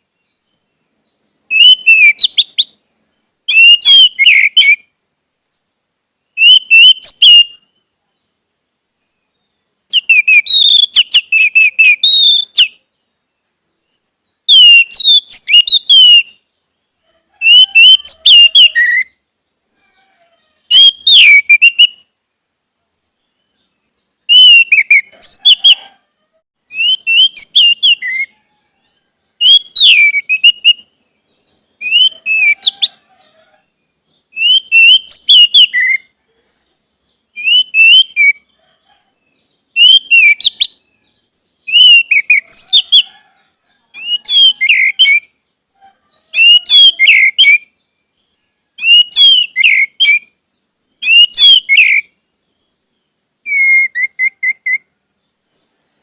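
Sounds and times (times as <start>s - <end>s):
thrush whistled song: 1.5s - 2.8s, 3.5s - 4.9s, 6.3s - 7.8s, 9.2s - 12.8s, 14.2s - 16.4s, 17.4s - 19.2s, 20.7s - 22.1s, 24.3s - 25.9s, 26.6s - 28.4s, 29.4s - 30.9s, 31.8s - 33.0s, 34.3s - 36.1s, 37.4s - 38.5s, 39.7s - 40.8s, 41.6s - 43.0s, 44.0s - 45.3s, 46.3s - 47.7s, 48.8s - 50.3s, 51.0s - 52.2s, 53.4s - 54.9s.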